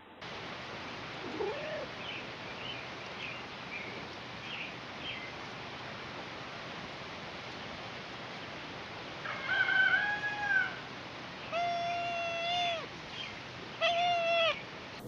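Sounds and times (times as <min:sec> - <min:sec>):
outdoor background noise: 0:00.0 - 0:15.0
small birds chirping: 0:01.0 - 0:05.6, 0:12.6 - 0:15.0.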